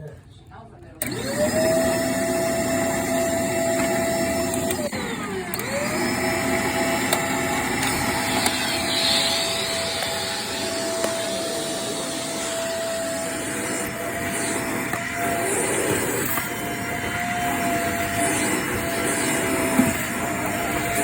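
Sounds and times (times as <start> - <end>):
vacuum cleaner on carpet: 1.0 - 21.0.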